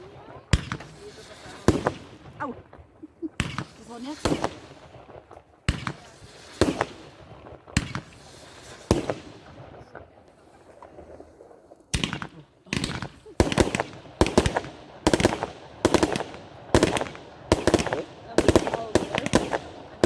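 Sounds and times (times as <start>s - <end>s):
fireworks firing shots: 0.0s - 20.0s.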